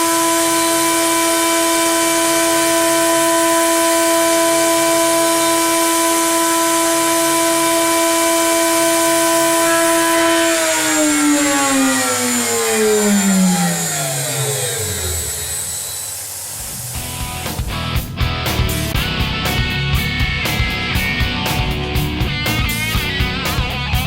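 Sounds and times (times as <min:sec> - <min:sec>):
spindle motor whining: 0:00.0 - 0:17.8.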